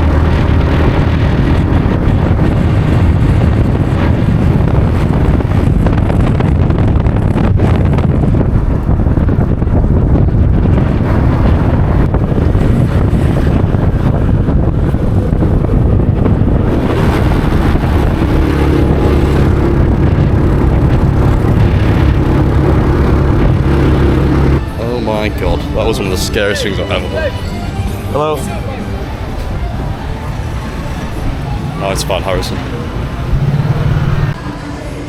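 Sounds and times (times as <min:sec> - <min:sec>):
motorbike engine running: 0:00.0 - 0:24.8, 0:32.7 - 0:34.4
wind buffeting microphone: 0:00.0 - 0:35.0.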